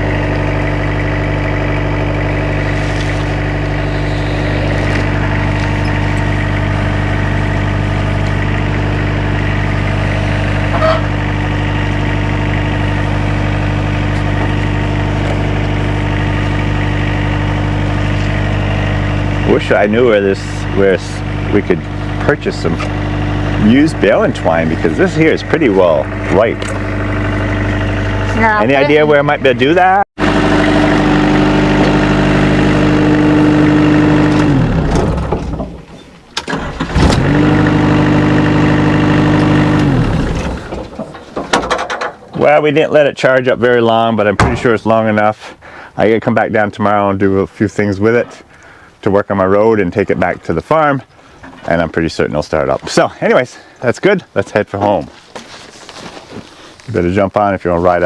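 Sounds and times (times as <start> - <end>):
diesel engine idling: 0.0 - 41.4, 43.7 - 46.1.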